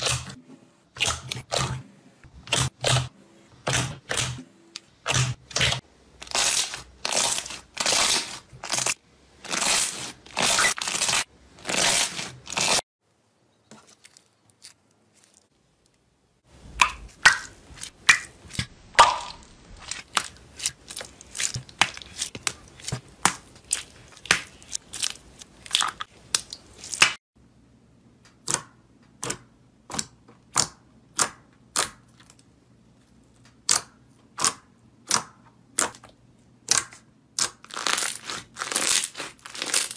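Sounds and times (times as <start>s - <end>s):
slime squelching: 16.6s - 27.2s, 33.6s - 39.9s
slime crackling and popping: 36.7s - 39.9s.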